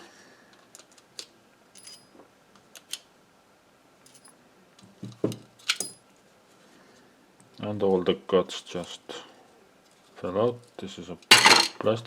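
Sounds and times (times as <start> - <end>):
relay parts clicking and clattering: 11.3 - 11.9.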